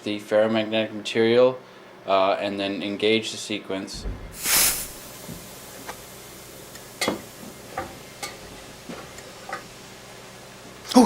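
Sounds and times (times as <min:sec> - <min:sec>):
low steady hum: 0:03.8 - 0:08.7.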